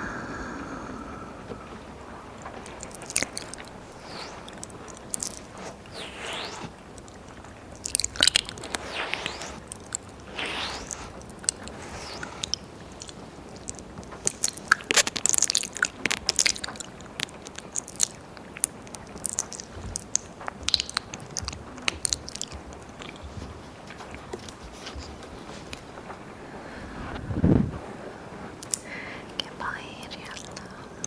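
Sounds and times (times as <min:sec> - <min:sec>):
lip smacks: 0:00.0 - 0:26.0, 0:28.6 - 0:30.8
wet ear licking sounds: 0:02.3 - 0:25.9, 0:28.6 - 0:30.8
tongue clicks: 0:02.4 - 0:23.3, 0:28.6 - 0:30.8.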